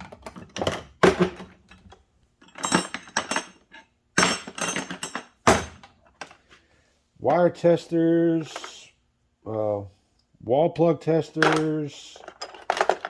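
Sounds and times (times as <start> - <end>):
metal hand tools clattering: 0.0 - 5.8.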